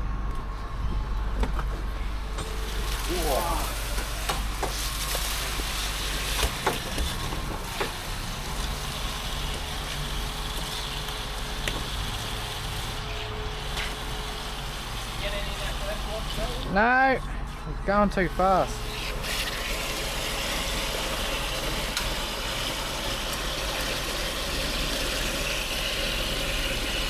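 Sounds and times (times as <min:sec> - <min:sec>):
low engine rumble: 0:00.0 - 0:19.2.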